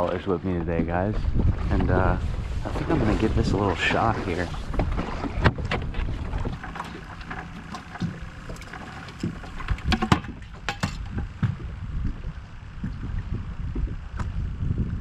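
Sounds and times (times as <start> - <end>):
low rumble of water: 0.0 - 15.0
wind buffeting microphone: 0.0 - 15.0
sharp clicks and knocks: 6.5 - 11.7.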